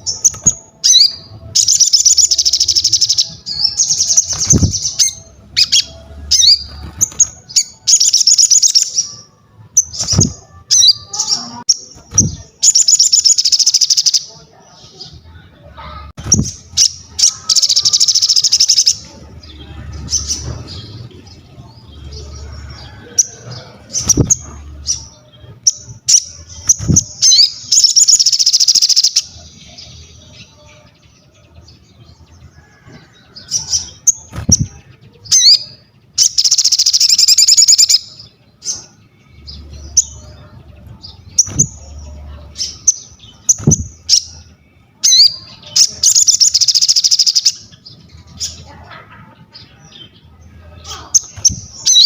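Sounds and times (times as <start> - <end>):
songbird singing: 0.0 - 52.0
rapid buzzy bird trills: 36.2 - 38.8.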